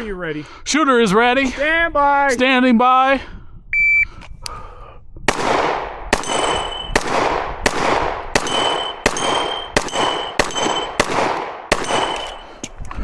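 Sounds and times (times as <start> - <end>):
pistol shots: 5.3 - 12.8
steel target ringing clang: 6.2 - 7.0, 8.4 - 11.1.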